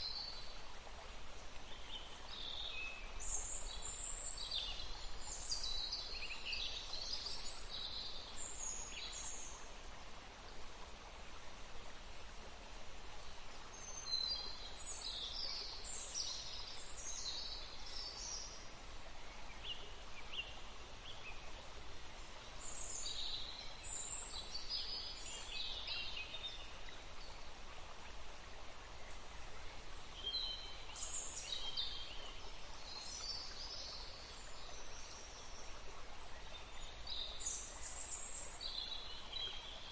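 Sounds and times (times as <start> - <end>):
flowing water rushing: 0.0 - 39.9
songbirds chirping: 0.0 - 39.9.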